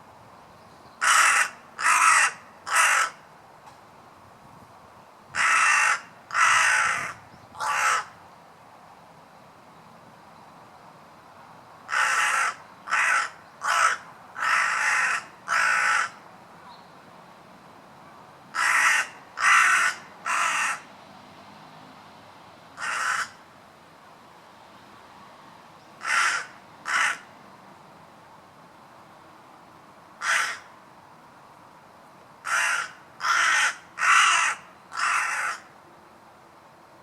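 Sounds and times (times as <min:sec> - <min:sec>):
crow cawing: 0:01.0 - 0:03.2, 0:05.4 - 0:08.2, 0:11.9 - 0:16.2, 0:18.6 - 0:20.9, 0:22.8 - 0:23.4, 0:26.0 - 0:27.3, 0:30.2 - 0:30.7, 0:32.4 - 0:35.7.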